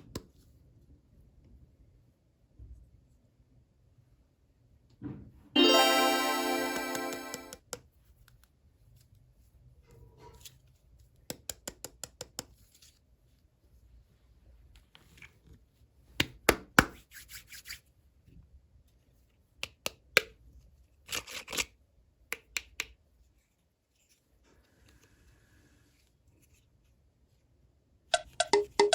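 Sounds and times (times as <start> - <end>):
background music: 5.6 - 7.6.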